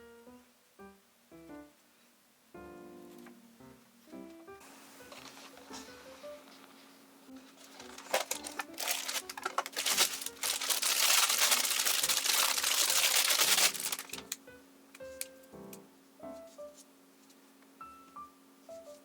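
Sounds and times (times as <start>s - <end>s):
soft background music: 0.0s - 1.9s, 2.5s - 19.0s
wrapping material crinkling: 7.4s - 14.4s.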